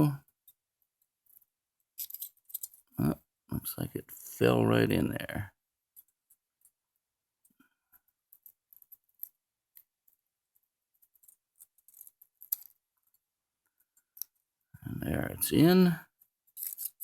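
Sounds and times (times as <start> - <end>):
small metallic clicks: 0.2 - 3.0, 7.4 - 14.5, 16.1 - 17.0.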